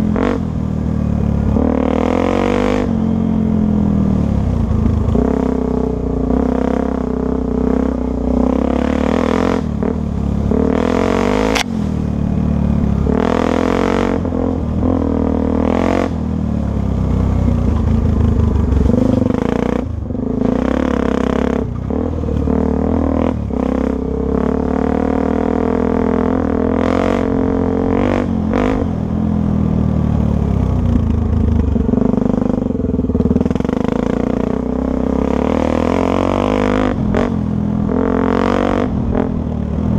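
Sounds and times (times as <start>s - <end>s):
dirt bike engine revving: 1.4s - 3.6s, 4.8s - 16.4s, 17.4s - 29.0s
sharp click: 11.5s - 11.7s.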